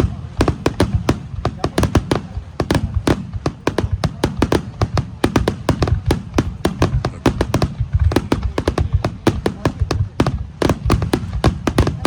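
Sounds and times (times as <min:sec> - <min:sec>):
fireworks bursting: 0:00.0 - 0:12.0.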